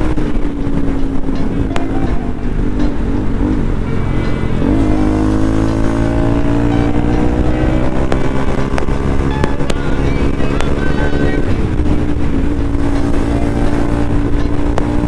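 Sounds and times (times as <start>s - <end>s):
motorcycle engine while riding: 0.0s - 15.0s.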